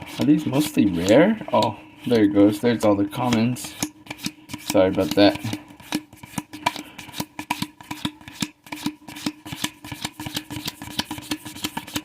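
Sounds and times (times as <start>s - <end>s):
cards flipped by hand: 3.2s - 12.0s.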